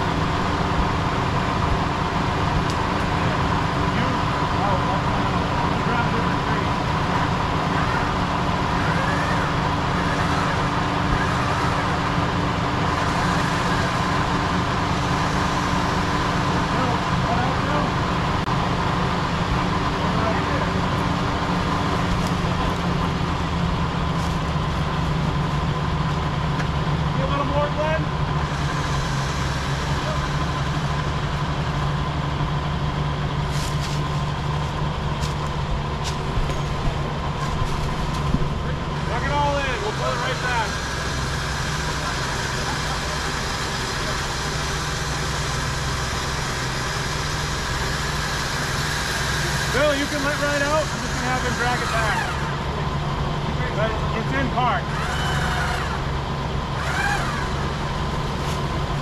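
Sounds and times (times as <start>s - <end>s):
constant high whine: 0.0s - 59.0s
vehicle engine running: 0.0s - 59.0s.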